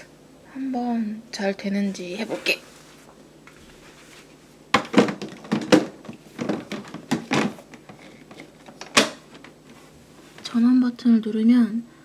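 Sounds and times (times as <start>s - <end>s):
plastic parts knocking and clattering: 4.7s - 9.6s.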